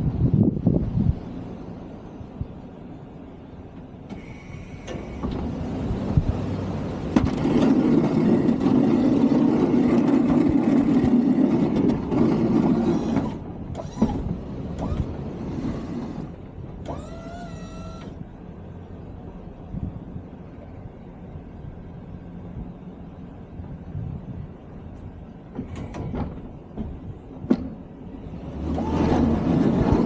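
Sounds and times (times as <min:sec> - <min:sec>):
snow-plow truck running: 0:00.0 - 0:30.0
electric motor whine: 0:16.9 - 0:18.2.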